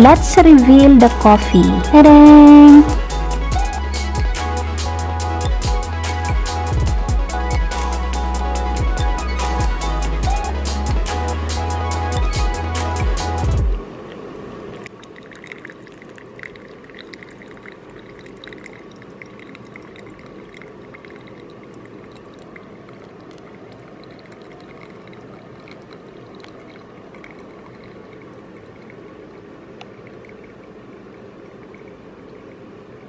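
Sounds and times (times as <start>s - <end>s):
water drips and splashes: 14.0s - 32.5s
water pouring: 14.6s - 32.0s.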